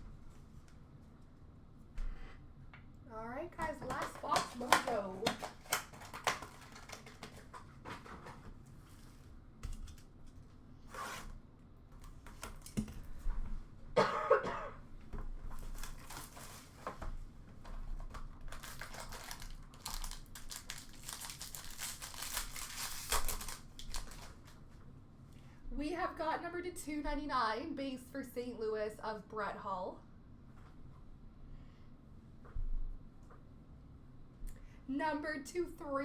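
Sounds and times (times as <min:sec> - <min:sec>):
plastic wrapping crinkling and tearing: 0:03.8 - 0:08.1, 0:15.4 - 0:24.6
person coughing: 0:14.0 - 0:14.8.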